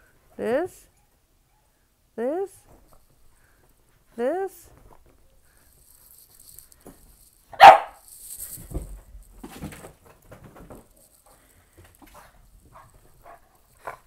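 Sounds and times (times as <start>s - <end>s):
dog barking: 7.6s - 8.0s.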